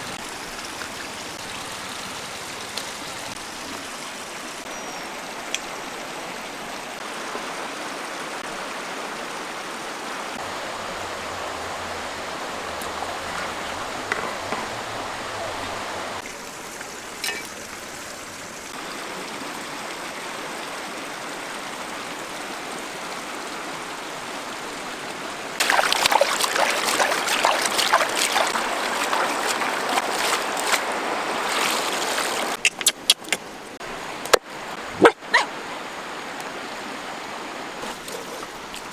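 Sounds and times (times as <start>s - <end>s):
running water rushing: 0.0s - 38.9s.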